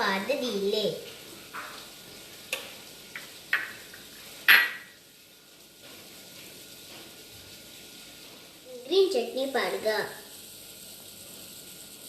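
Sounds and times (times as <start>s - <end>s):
spoon tapping dish: 3.2s - 3.8s, 4.5s - 4.9s.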